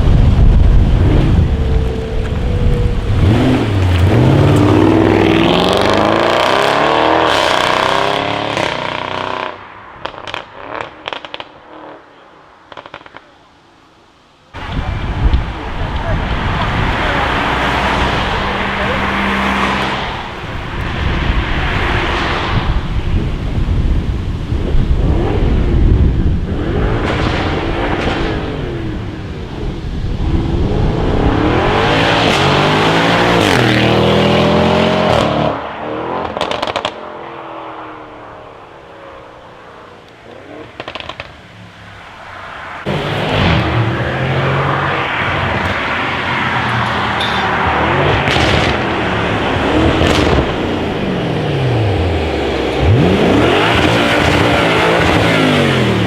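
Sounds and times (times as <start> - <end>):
exhaust crackles and pops: 0.0 - 6.4, 10.0 - 13.5, 36.2 - 37.0, 40.0 - 42.0, 42.8 - 56.0
car engine revving: 0.0 - 12.0, 14.6 - 23.4, 24.9 - 56.0.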